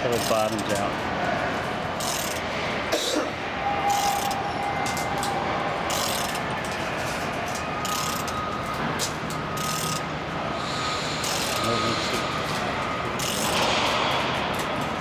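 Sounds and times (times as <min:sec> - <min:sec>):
gear mechanism turning: 0:00.0 - 0:00.9, 0:01.7 - 0:02.5, 0:03.8 - 0:08.5, 0:09.6 - 0:10.1, 0:10.7 - 0:15.0
ratchet clicks: 0:00.0 - 0:00.9, 0:02.0 - 0:02.5, 0:03.9 - 0:06.8, 0:07.4 - 0:08.4, 0:09.0 - 0:10.1, 0:11.2 - 0:14.9.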